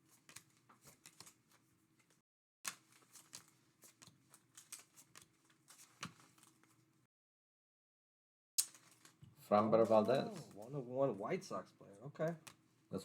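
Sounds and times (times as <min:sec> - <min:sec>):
trading cards flipped by hand: 0:00.0 - 0:06.8, 0:08.6 - 0:09.2, 0:09.8 - 0:10.7, 0:12.3 - 0:12.6.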